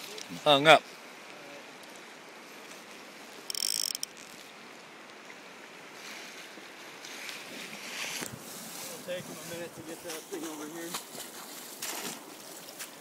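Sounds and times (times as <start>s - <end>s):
river current rushing: 0.0s - 10.4s.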